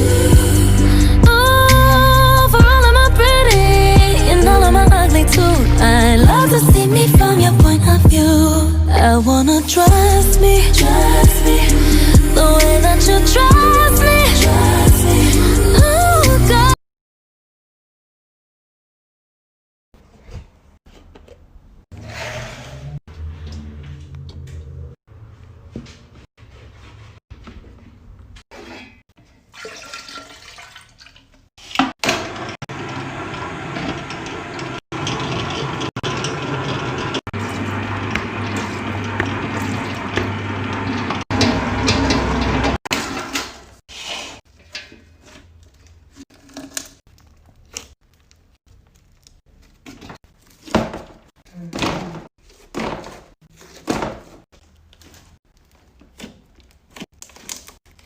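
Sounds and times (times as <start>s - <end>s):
liquid pouring into container: 29.5s - 31.4s.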